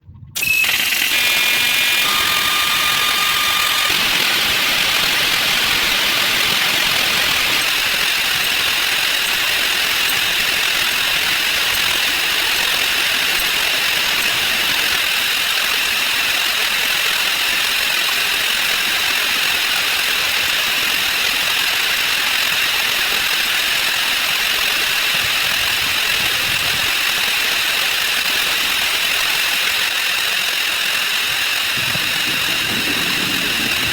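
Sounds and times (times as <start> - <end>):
short tones: 0.4 - 14.5.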